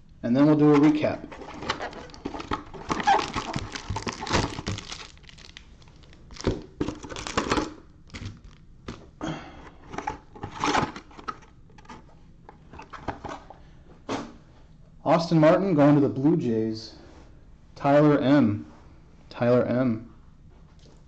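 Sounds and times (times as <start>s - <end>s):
plastic wrapping crinkling and tearing: 1.2s - 9.0s.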